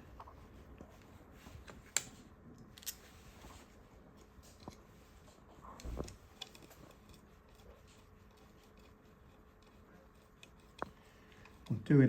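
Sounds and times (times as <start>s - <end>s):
parts handling noise: 0.0s - 7.2s.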